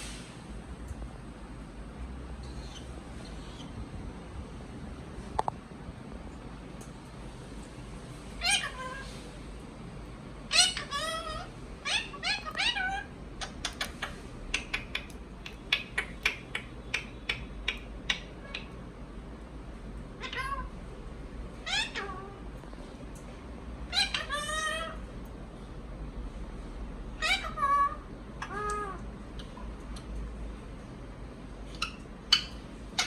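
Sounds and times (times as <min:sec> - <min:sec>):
parakeet meow-like calls: 0:08.4 - 0:09.1, 0:10.5 - 0:14.1, 0:20.2 - 0:20.7, 0:21.6 - 0:22.4, 0:23.9 - 0:25.0, 0:27.2 - 0:29.0
parakeet sharp clicks: 0:13.4 - 0:18.3.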